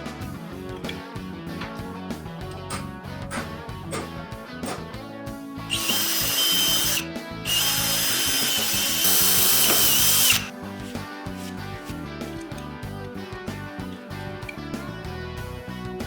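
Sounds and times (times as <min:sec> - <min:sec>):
background music: 0:00.0 - 0:16.0
power tool whining: 0:05.6 - 0:10.5.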